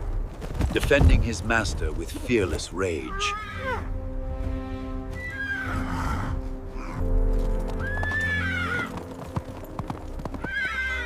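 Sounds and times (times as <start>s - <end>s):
background music: 1.1s - 11.0s
horse whinnying: 3.1s - 3.9s, 5.1s - 7.0s, 7.8s - 9.0s, 10.4s - 11.0s.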